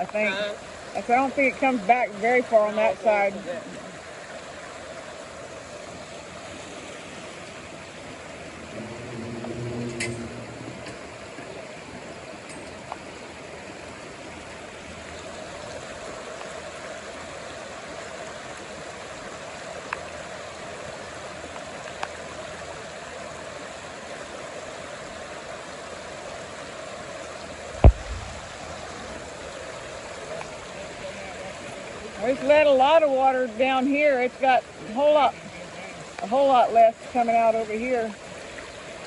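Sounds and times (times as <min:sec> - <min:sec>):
floodwater rushing: 0:00.0 - 0:39.0
loud thump: 0:27.8 - 0:28.4.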